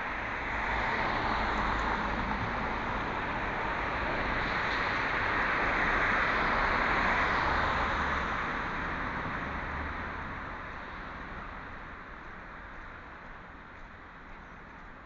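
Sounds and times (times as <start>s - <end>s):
car passing by: 0.4s - 10.6s.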